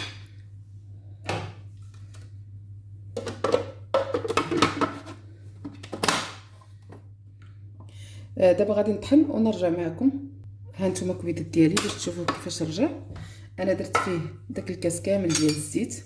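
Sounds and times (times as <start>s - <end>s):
low electrical hum: 0.0s - 16.0s
containers and utensils clinking: 3.2s - 6.5s.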